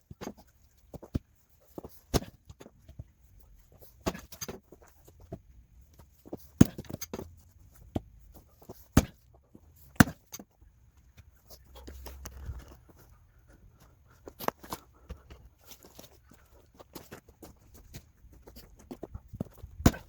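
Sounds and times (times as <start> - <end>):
axe chopping wood: 2.1 - 2.4, 4.0 - 4.6, 6.6 - 7.2, 8.9 - 9.3, 9.9 - 10.4, 19.7 - 20.0.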